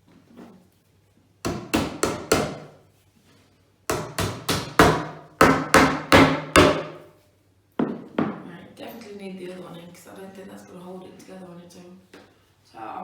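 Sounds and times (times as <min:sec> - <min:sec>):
hammer striking wood: 0:01.4 - 0:02.8, 0:03.9 - 0:07.1.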